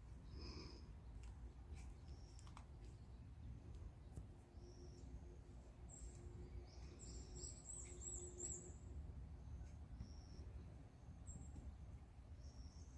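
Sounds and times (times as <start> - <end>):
faint high bird calls: 4.1 - 12.9.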